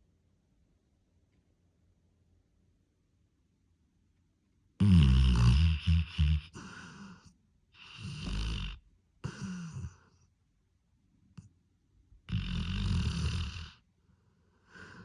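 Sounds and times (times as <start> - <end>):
person snoring: 4.8 - 10.0, 12.3 - 13.8, 14.8 - 15.0.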